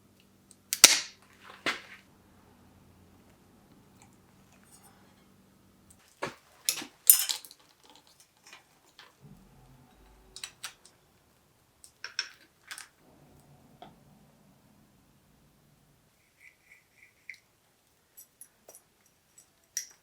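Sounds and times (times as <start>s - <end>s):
metal tools clinking and rattling: 6.6s - 9.2s, 18.1s - 20.0s.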